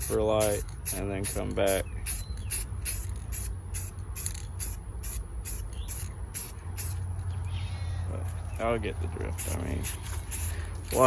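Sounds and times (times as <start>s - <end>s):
aerosol spray can hissing: 0.0s - 7.0s, 9.4s - 11.0s.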